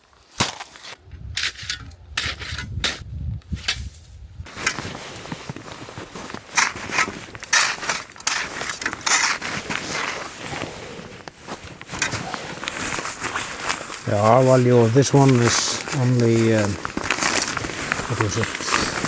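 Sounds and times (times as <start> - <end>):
rubbing rustle with swishes: 3.8 - 19.0
crunching in snow: 4.5 - 19.0.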